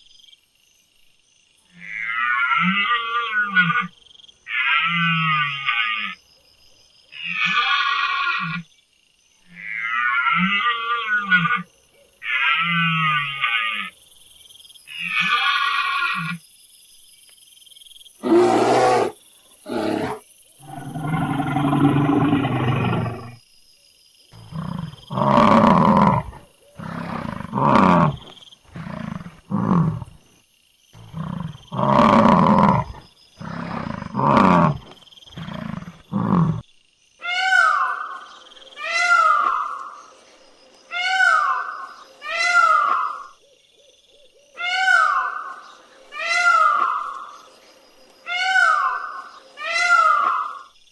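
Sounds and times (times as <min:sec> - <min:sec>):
large animal roaring: 0:18.2 - 0:23.4, 0:24.4 - 0:30.2, 0:31.0 - 0:36.6.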